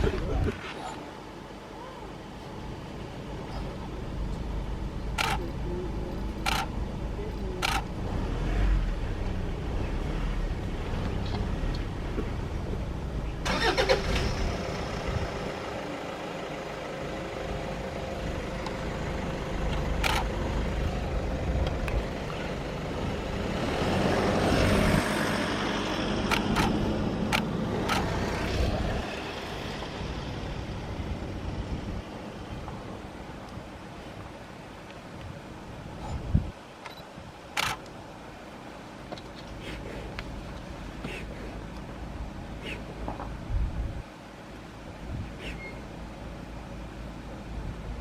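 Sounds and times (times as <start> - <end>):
vehicle engine rumbling: 0.0 - 48.0
sharp clicks: 5.1 - 5.4, 6.4 - 6.8, 7.6 - 7.9, 19.7 - 20.3, 26.2 - 28.1.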